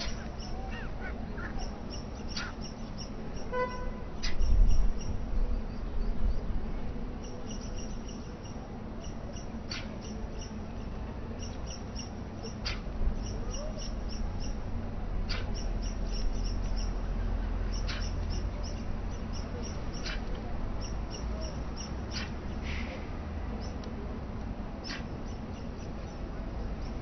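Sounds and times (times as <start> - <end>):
small birds chirping: 0.0 - 3.5, 4.2 - 6.5, 7.2 - 22.6, 24.8 - 27.0
wind rumble on microphone: 3.5 - 7.2.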